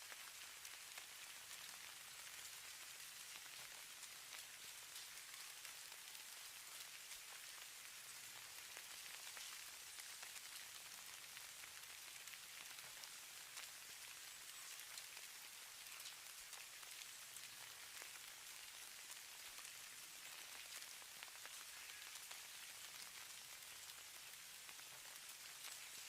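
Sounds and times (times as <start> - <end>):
hiss of falling snow: 0.0 - 26.0
tiny ticks of icy grains: 12.3 - 26.0.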